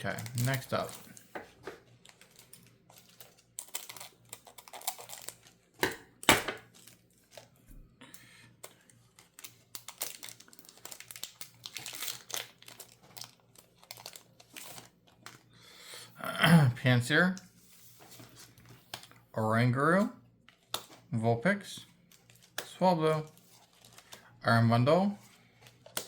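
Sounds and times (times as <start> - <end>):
foil wrapper crinkling and tearing: 0.0 - 5.8, 6.6 - 7.6, 8.6 - 15.5, 22.0 - 24.4, 25.5 - 26.0.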